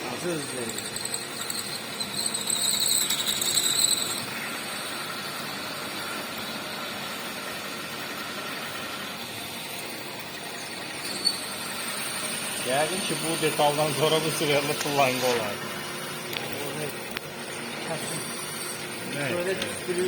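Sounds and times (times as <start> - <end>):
high-pitched cutting squeal: 0.0 - 5.5, 10.5 - 15.6
milling machine hum: 0.0 - 20.0.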